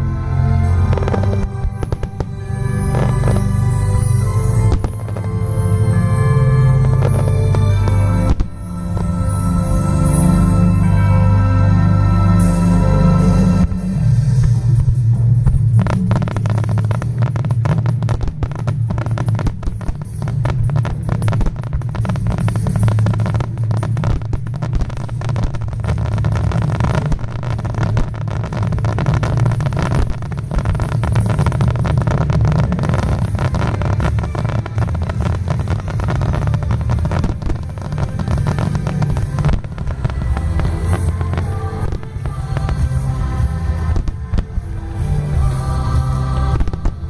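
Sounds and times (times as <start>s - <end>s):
music playing: 0.0s - 47.0s
firework bursts: 0.6s - 11.2s, 12.4s - 47.0s.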